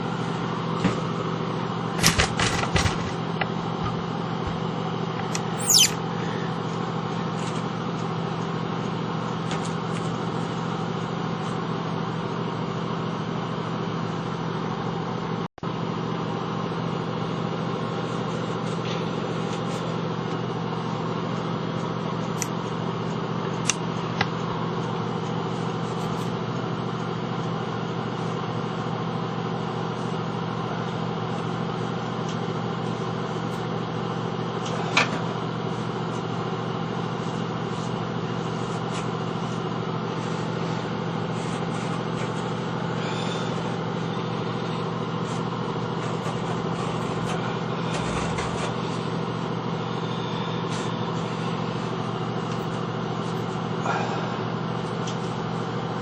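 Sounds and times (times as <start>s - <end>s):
low mechanical hum: 0.0s - 56.0s.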